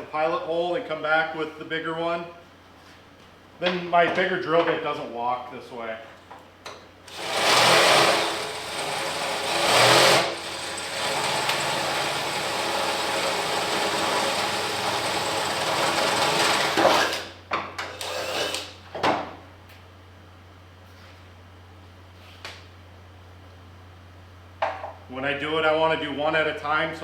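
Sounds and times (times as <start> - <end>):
electric drill boring into metal: 7.1 - 17.3, 17.9 - 18.7.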